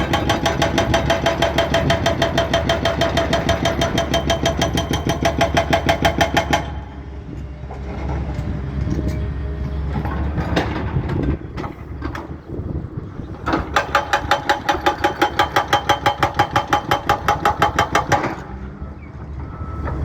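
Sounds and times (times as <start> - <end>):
hydraulic breaker hammering: 0.0 - 7.0, 13.4 - 18.6
excavator engine running: 0.0 - 20.0
scattered knocks: 13.3 - 18.4.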